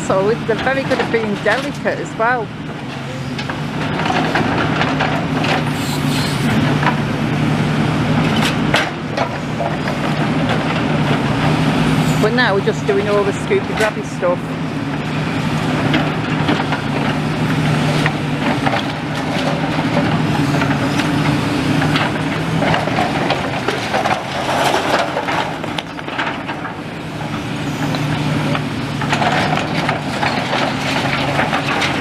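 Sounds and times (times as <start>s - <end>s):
excavator diesel engine running: 0.0s - 32.0s.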